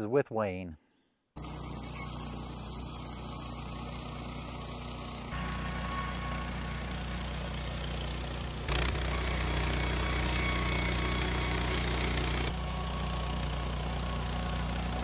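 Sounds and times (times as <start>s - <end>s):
sawmill running: 1.4s - 15.0s
band saw blade cutting wood: 2.1s - 12.6s.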